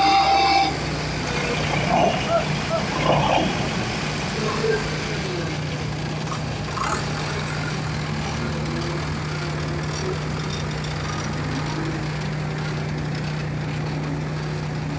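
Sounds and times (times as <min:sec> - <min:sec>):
wood chipper engine running: 0:00.0 - 0:14.9.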